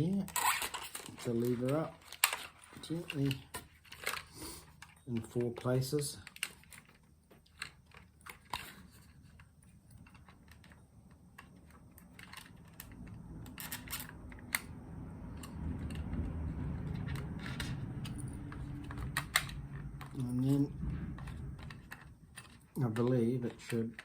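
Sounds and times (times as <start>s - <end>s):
tool clicking and scraping plastic: 0.0s - 24.0s
low rumble: 12.7s - 22.5s.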